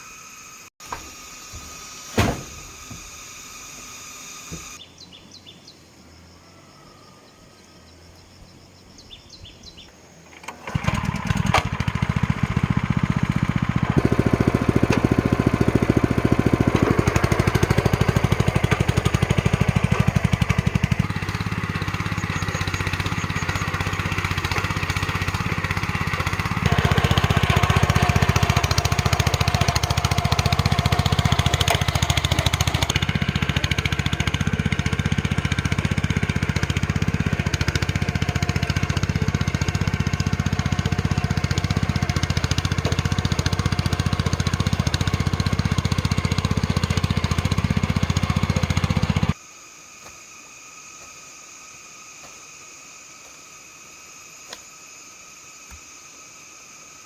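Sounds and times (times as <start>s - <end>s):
small engine running: 0.0s - 4.8s, 10.3s - 49.4s.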